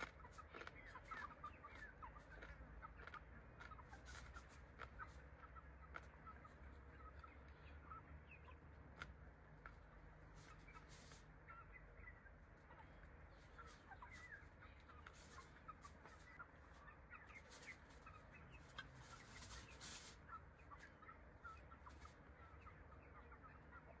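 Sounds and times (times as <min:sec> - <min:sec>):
birds chirping: 0:00.0 - 0:24.0
chickens clucking: 0:00.0 - 0:24.0.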